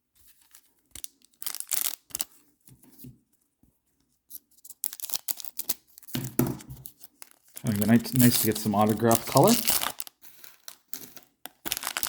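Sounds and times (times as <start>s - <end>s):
card pack wrapper crinkling and tearing: 0.3s - 2.3s, 4.6s - 6.2s, 6.8s - 12.0s
cards being handled: 6.1s - 10.1s.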